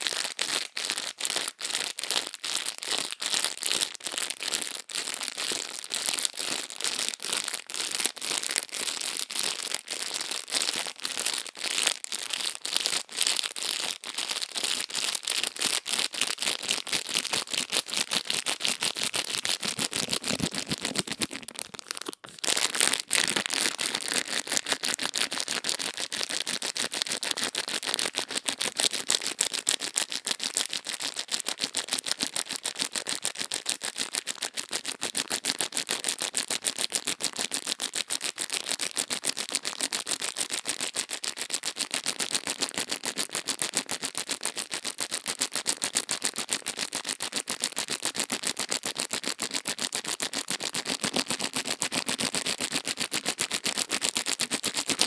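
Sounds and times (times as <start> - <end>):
crackling on microphone: 19.1 - 24.7.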